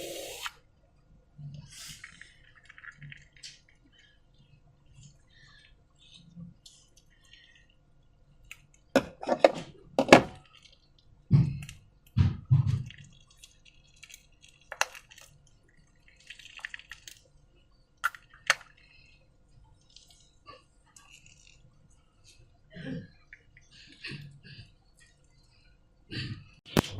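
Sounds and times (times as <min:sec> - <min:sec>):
slime squelching: 0:10.4 - 0:24.2.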